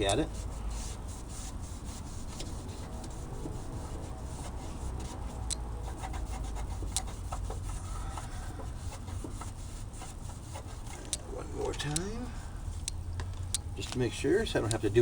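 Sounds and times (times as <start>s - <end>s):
scratchy scrubbing on plastic: 0.0s - 12.2s
sharp ticks: 6.9s - 7.4s.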